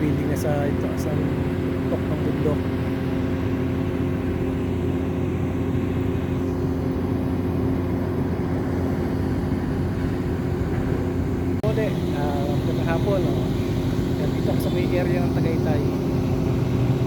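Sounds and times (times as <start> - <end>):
low mechanical hum: 0.0 - 17.0.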